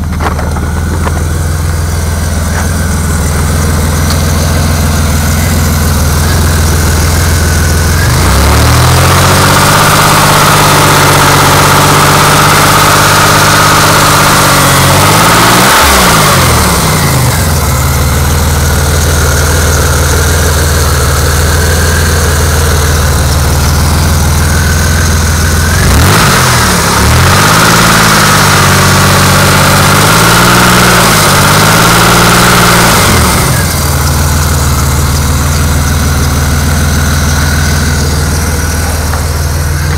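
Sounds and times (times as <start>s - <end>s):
car engine idling and revving: 0.0s - 39.9s
engine knock: 0.0s - 39.9s.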